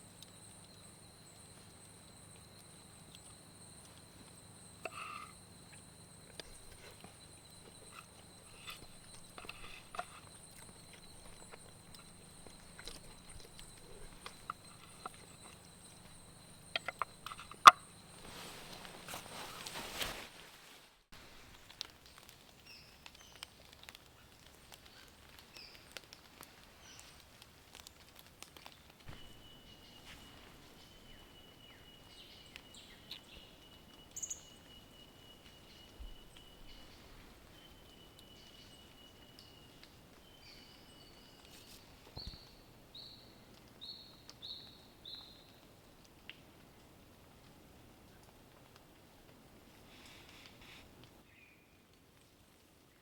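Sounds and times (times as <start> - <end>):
faint ticks: 0.0 - 20.1.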